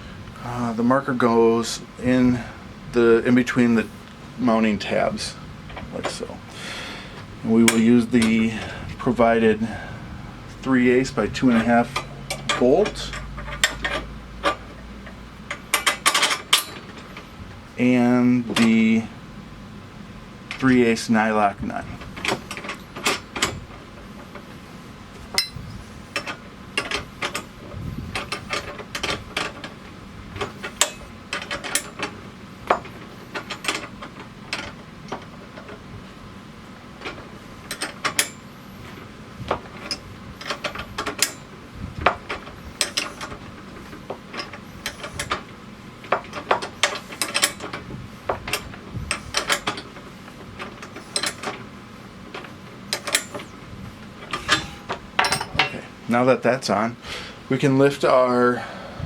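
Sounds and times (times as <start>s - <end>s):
wrenches clicking on metal: 10.6s - 17.2s, 25.3s - 29.8s, 30.4s - 35.8s, 37.0s - 38.5s, 39.5s - 51.7s, 52.3s - 53.6s, 54.2s - 55.9s.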